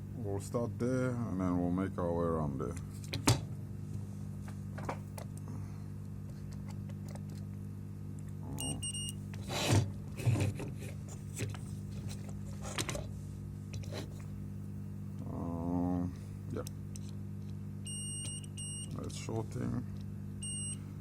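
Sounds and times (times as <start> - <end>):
low electrical hum: 0.0 - 21.0.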